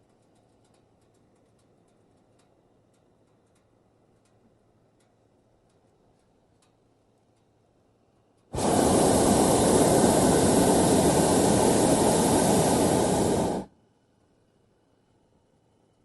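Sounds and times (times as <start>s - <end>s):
hot-air balloon burner firing: 8.5s - 13.7s.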